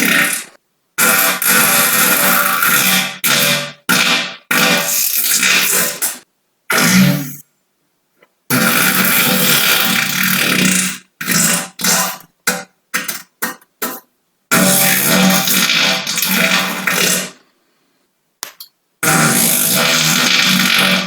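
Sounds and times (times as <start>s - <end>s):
buzzy farts: 6.7s - 7.4s, 19.0s - 21.0s.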